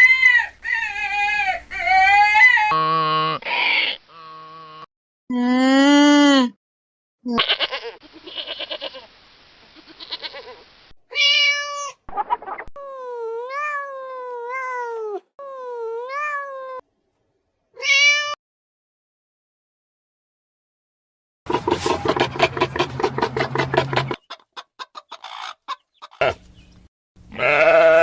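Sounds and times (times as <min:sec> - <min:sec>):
goat-like bleats: 0:07.3 - 0:09.1, 0:09.8 - 0:10.6, 0:26.2 - 0:26.4, 0:27.3 - 0:28.0
cat meowing: 0:11.1 - 0:12.0, 0:13.1 - 0:16.8, 0:17.8 - 0:18.4.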